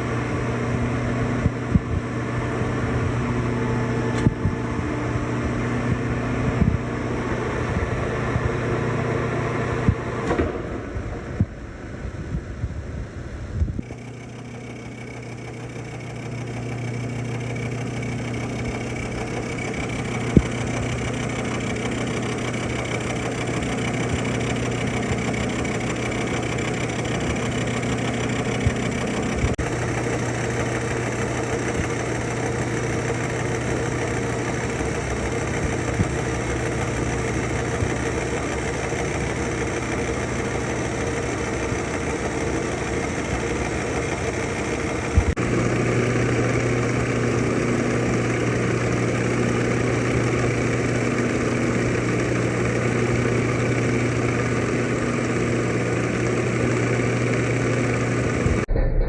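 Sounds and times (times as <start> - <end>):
sharp clicks: 13.8 - 41.8
milling machine cutting metal: 13.8 - 58.6.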